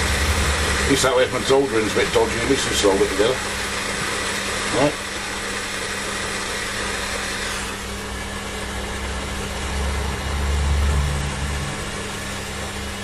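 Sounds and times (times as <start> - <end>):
low rumble: 0.0 - 2.6
machine hum: 0.0 - 13.0.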